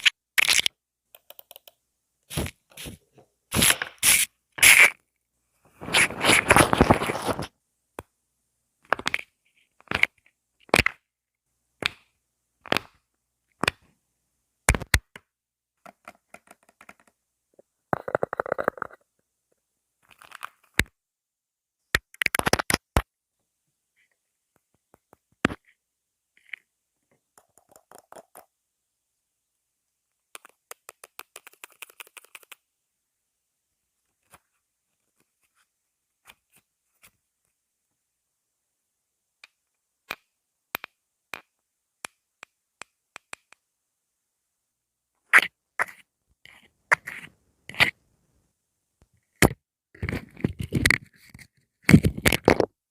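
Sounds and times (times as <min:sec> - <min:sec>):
clicks and snaps: 0:21.9 - 0:23.1.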